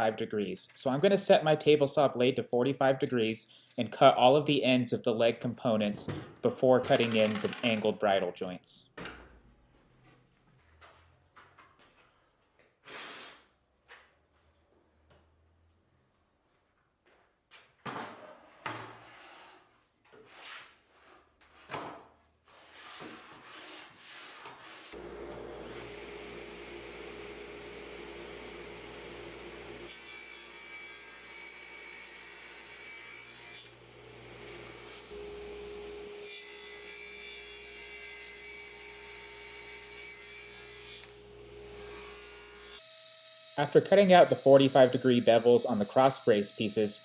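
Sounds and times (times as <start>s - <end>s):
table saw cutting wood: 24.6s - 47.0s.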